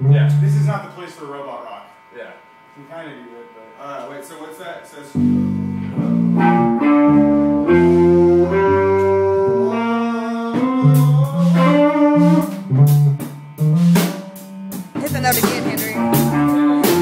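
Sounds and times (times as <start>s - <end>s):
guitar playing slow melody: 5.2s - 13.8s, 14.9s - 17.0s.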